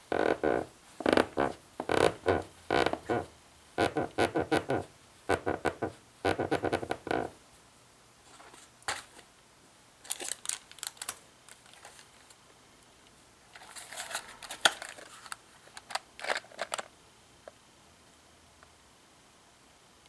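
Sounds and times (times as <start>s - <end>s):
floor creaking under footsteps: 0.0s - 7.4s.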